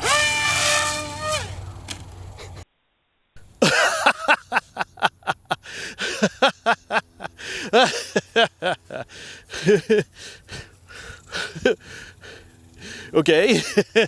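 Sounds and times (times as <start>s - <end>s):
person laughing hard: 2.4s - 2.6s, 3.4s - 14.0s.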